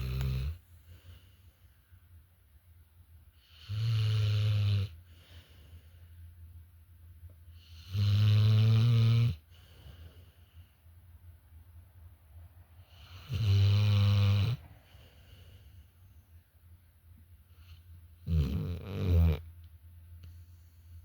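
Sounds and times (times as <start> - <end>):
loud snoring: 0.0 - 0.6, 3.4 - 5.0, 7.6 - 9.4, 12.9 - 14.6, 18.2 - 19.4
faint breathing: 0.0 - 2.2, 5.0 - 6.6, 9.4 - 11.4, 14.6 - 16.6, 20.2 - 21.0.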